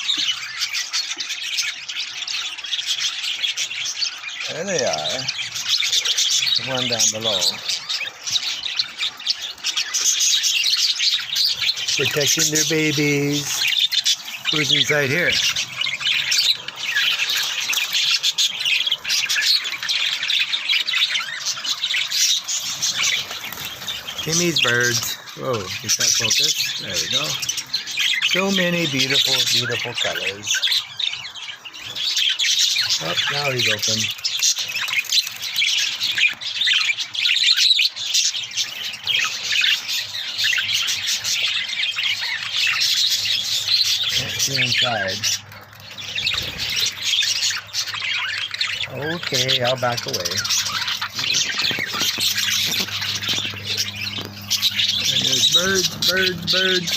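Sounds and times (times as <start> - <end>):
small birds chirping and squawking: 0.0 - 56.9.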